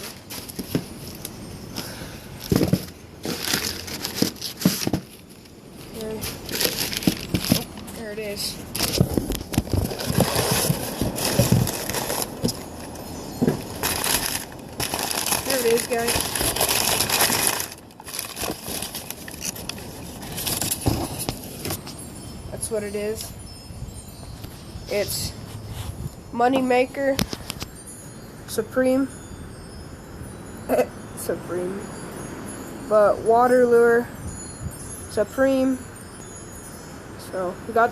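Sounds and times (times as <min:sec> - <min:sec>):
paper rustling: 0:02.4 - 0:05.3, 0:05.9 - 0:08.0, 0:08.7 - 0:12.6, 0:13.6 - 0:21.8
packing paper crumpling: 0:02.5 - 0:07.9, 0:08.6 - 0:12.7, 0:13.6 - 0:21.5.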